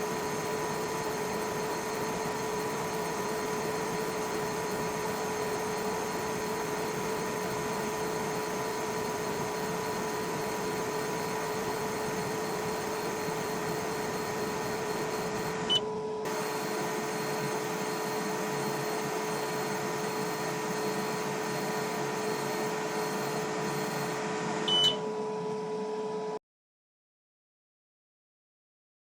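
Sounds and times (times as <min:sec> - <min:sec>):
laser engraver humming: 0:00.0 - 0:26.3
short high beeps: 0:24.7 - 0:25.0.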